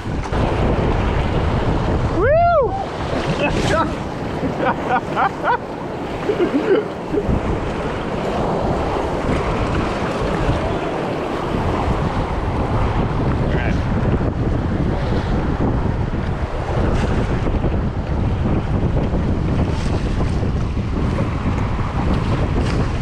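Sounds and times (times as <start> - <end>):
wind buffeting microphone: 0.0 - 23.0
river whitewater rushing: 2.1 - 12.8
people shouting: 2.2 - 2.9.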